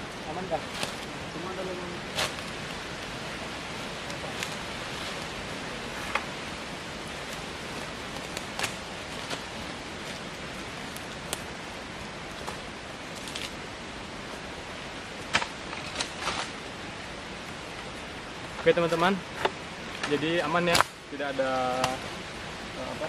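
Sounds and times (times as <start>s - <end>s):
leaves crackling: 0.0s - 23.0s
outdoor hiss: 0.0s - 23.0s
twigs snapping: 0.1s - 1.2s, 2.1s - 11.6s, 12.3s - 13.6s, 19.4s - 21.0s, 21.7s - 22.1s.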